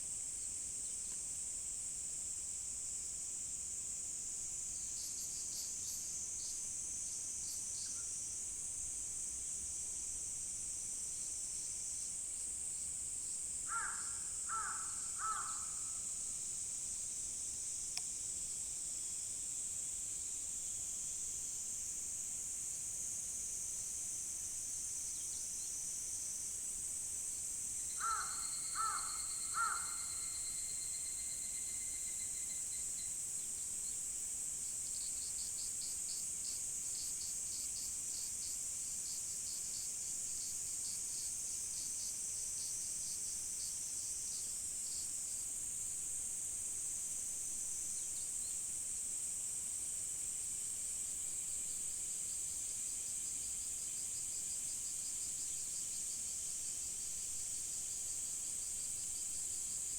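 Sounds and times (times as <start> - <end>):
insects chirring: 13.3 - 17.2, 23.6 - 45.9
crow cawing: 13.7 - 15.9, 28.0 - 30.1.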